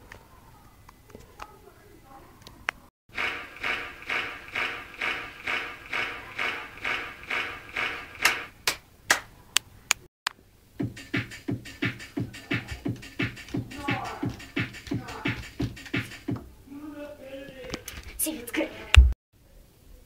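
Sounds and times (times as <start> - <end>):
rhythmic music-like beat: 3.1 - 8.7, 10.8 - 16.5
sharp clicks: 3.2 - 8.8.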